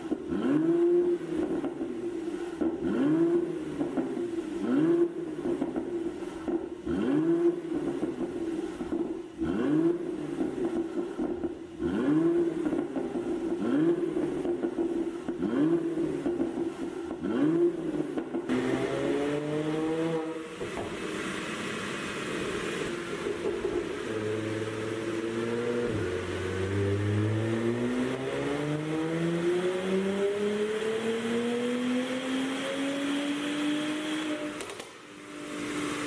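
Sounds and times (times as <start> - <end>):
car engine revving: 0.0 - 36.0
engine drone: 0.0 - 36.0.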